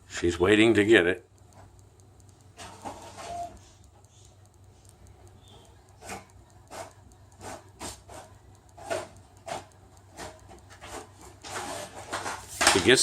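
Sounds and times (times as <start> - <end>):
low steady hum: 0.0 - 13.0
printer strokes: 2.6 - 4.2, 5.4 - 13.0.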